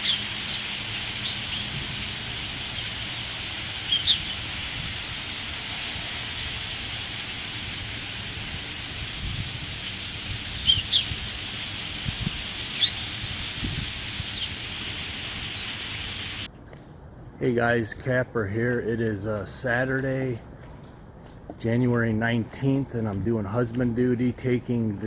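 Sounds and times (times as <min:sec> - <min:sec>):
bird chirps: 0:00.0 - 0:16.5
steady outdoor hiss: 0:00.0 - 0:25.0.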